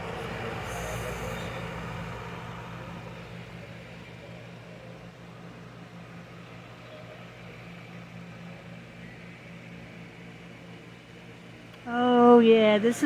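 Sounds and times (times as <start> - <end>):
faint hiss: 0.0 - 3.3
low room hum: 0.0 - 13.0.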